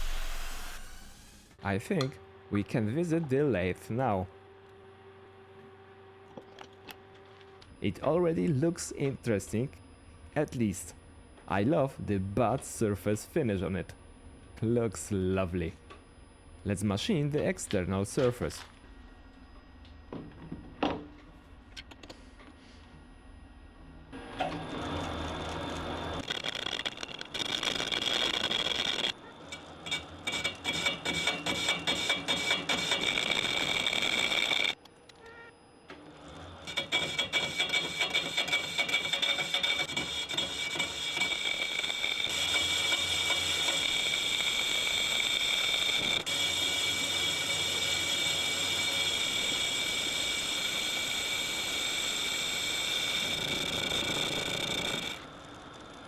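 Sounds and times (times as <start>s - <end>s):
metal lathe whining: 0.0s - 2.1s, 24.2s - 34.8s, 36.1s - 56.0s.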